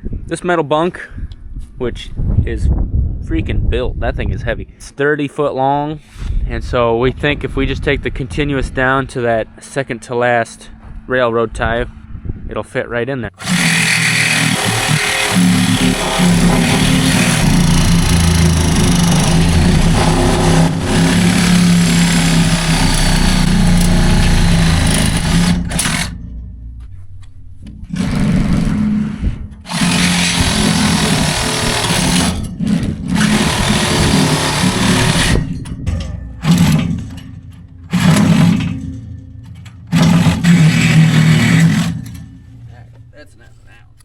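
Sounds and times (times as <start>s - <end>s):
power tool cutting steel: 13.4s - 26.4s, 27.8s - 42.7s.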